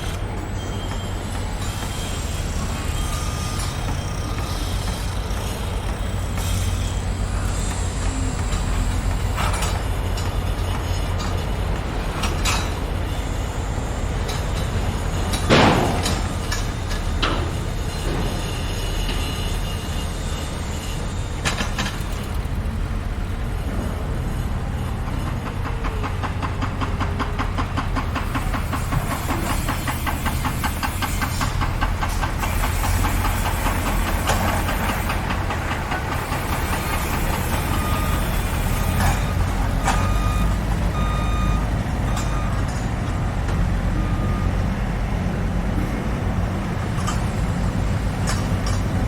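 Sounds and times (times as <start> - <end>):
heavy engine rumbling: 0.0 - 49.0
fast mechanical rattle: 1.6 - 41.4
metal clank: 14.3 - 19.6
short beeps: 39.1 - 42.8.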